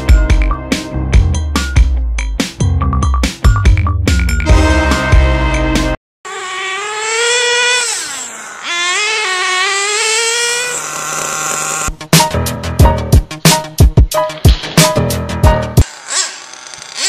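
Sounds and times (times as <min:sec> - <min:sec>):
music: 0:00.0 - 0:06.0, 0:11.9 - 0:15.8
small engine revving high: 0:06.3 - 0:11.9, 0:15.8 - 0:17.0.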